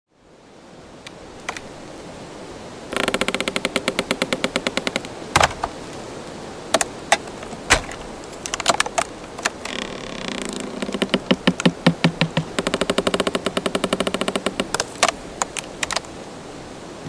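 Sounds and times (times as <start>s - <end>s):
background hiss: 0.1s - 17.0s
wood creaking and clicking: 3.0s - 5.8s, 6.7s - 16.1s
wooden knocks and cracks: 3.0s - 6.0s, 6.7s - 16.1s
low thump: 11.3s - 12.6s.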